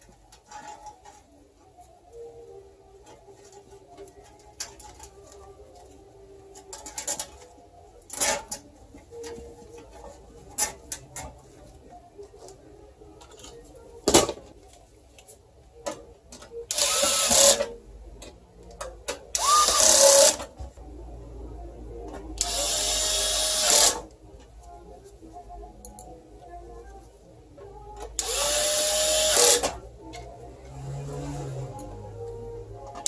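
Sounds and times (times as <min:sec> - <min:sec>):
electric screwdriver whirring: 0:16.7 - 0:17.7, 0:19.4 - 0:20.5, 0:22.4 - 0:24.0, 0:28.2 - 0:29.7.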